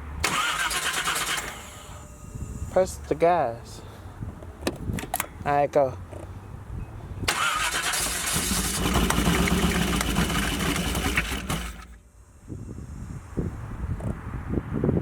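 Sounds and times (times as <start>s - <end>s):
car engine cranking: 0.2s - 3.3s, 4.6s - 5.4s, 7.3s - 13.0s.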